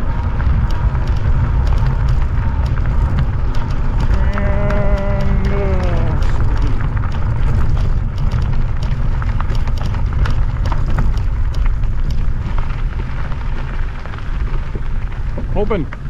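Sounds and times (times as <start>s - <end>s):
small clicks and crackles: 0.0s - 16.0s
wind buffeting microphone: 0.0s - 16.0s.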